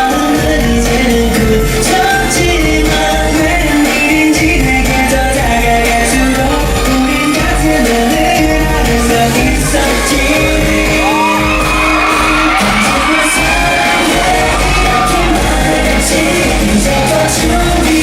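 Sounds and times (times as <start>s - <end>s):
pop song with sung vocals: 0.0s - 18.0s
audience shouting and whooping: 8.8s - 18.0s.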